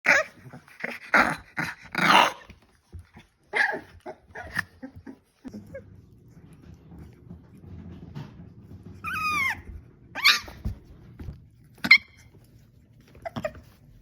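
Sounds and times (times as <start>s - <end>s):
puppies barking and growling: 0.0s - 14.0s.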